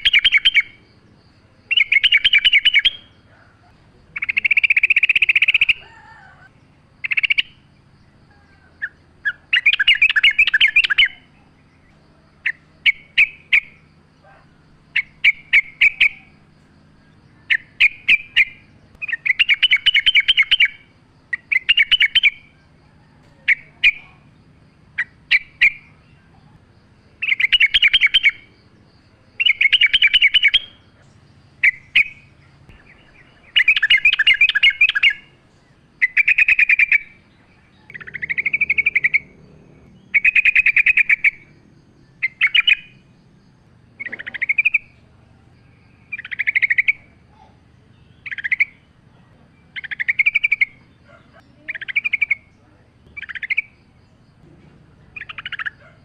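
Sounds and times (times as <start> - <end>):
bulbul singing warbled phrases: 0.0 - 56.0.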